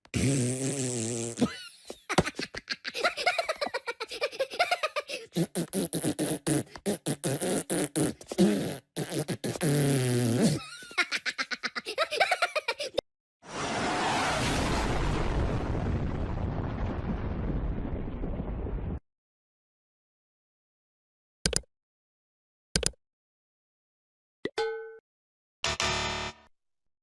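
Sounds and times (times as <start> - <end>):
comic buzzing sputtering effects: 25.7 - 26.5.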